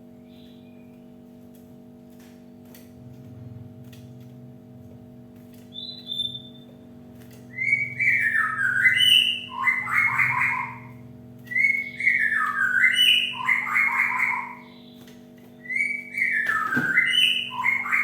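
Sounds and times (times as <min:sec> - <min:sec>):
steady low hum: 0:00.0 - 0:18.0
bird singing whistled notes: 0:05.7 - 0:06.6, 0:07.5 - 0:15.0, 0:15.6 - 0:18.0.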